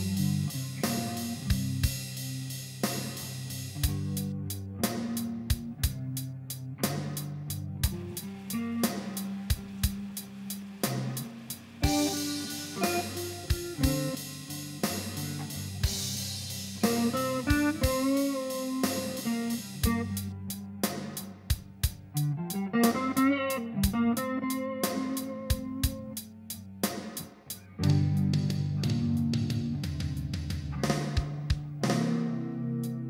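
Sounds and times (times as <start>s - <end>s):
bass line: 0.0s - 2.2s, 27.8s - 33.0s
drum kit beat: 0.0s - 33.0s
electric guitar melody: 0.0s - 33.0s.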